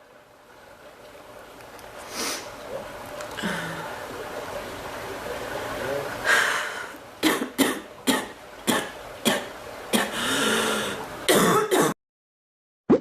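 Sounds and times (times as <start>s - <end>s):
person coughing: 7.2s - 10.2s, 11.3s - 12.0s
drawn-out breath: 10.1s - 11.1s.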